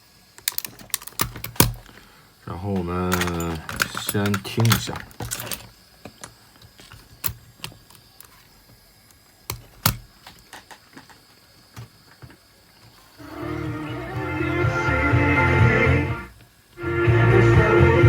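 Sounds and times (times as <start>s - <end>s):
music playing from tape: 13.2s - 18.0s.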